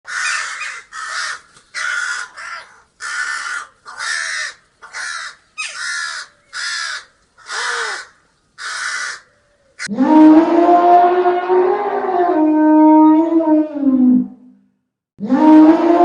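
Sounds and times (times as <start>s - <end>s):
crow cawing: 0.1s - 9.9s.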